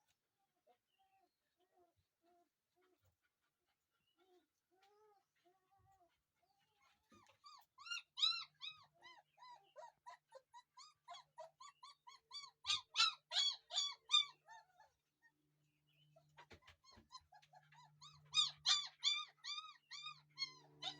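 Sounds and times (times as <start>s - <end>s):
puppy whimpering yelps: 4.2s - 15.3s, 16.3s - 20.9s.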